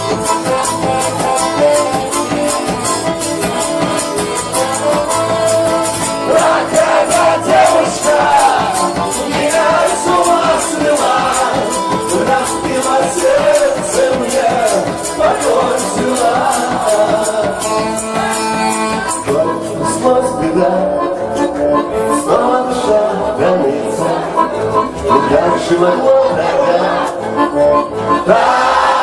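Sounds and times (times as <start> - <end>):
tambourine beat: 0.0 - 19.4
held chords: 0.0 - 29.0.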